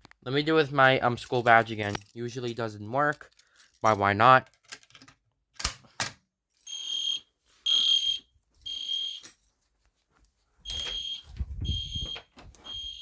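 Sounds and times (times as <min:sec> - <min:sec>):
high-pitched alarm horn blasts: 0:06.7 - 0:09.2.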